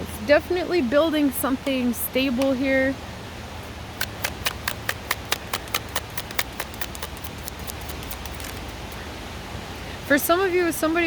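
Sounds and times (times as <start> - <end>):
cards being shuffled: 4.0 - 9.0.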